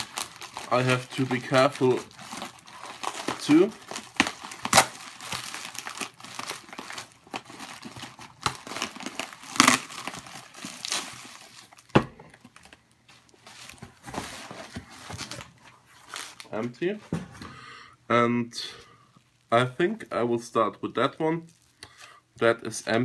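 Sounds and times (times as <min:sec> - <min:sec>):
packing material crinkling: 0:00.0 - 0:17.0, 0:21.4 - 0:21.8.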